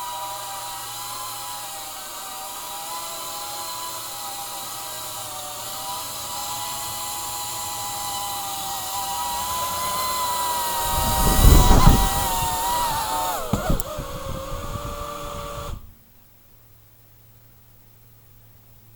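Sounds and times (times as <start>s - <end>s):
drone motors whining: 0.0s - 15.9s.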